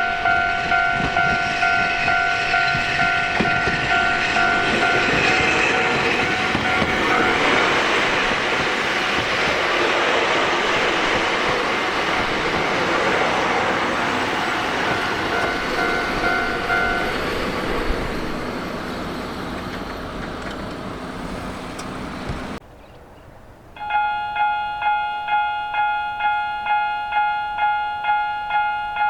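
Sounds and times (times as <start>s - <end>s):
faint crossing bell ringing: 0.0s - 7.5s, 14.9s - 17.2s, 23.8s - 29.0s
electronic crossing alarm bell: 0.0s - 7.6s, 14.9s - 17.2s, 23.8s - 29.0s
train wheel noise: 0.0s - 22.6s.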